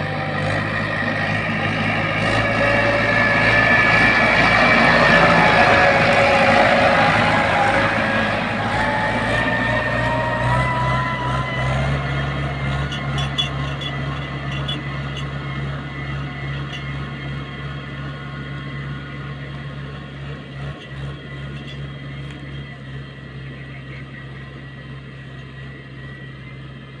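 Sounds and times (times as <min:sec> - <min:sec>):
high whine rising in pitch: 0:00.0 - 0:19.8
tractor diesel engine running: 0:00.0 - 0:27.0.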